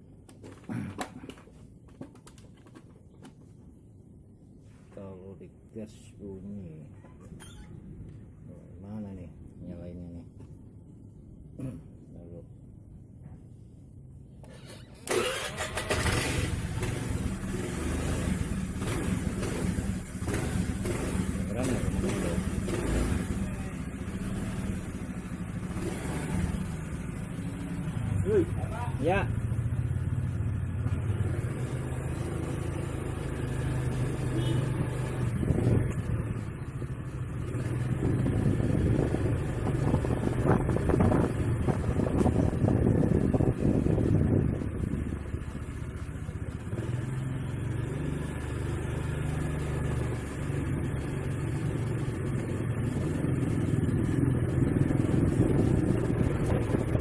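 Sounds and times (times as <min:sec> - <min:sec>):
scooter engine starting and running: 0:14.4 - 0:57.0.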